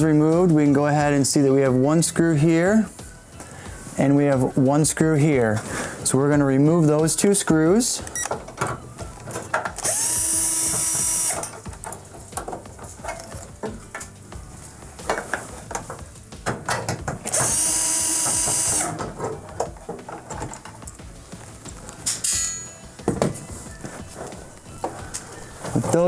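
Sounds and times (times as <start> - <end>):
handling clicks and knocks: 8.0 - 9.9, 11.4 - 14.2, 15.0 - 17.6, 18.6 - 26.0
power screwdriver motor whine: 9.8 - 11.5, 17.3 - 19.0.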